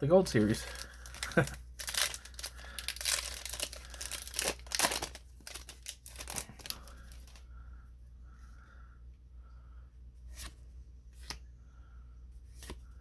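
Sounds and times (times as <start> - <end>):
foil wrapper crinkling and tearing: 0.3 - 7.4.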